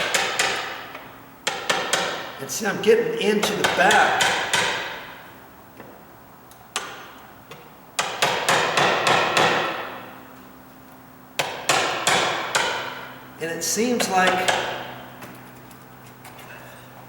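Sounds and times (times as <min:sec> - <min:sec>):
hammer striking chisel: 0:00.0 - 0:02.4, 0:03.4 - 0:05.2, 0:06.7 - 0:07.2, 0:08.0 - 0:10.1, 0:11.4 - 0:13.1, 0:14.0 - 0:15.0.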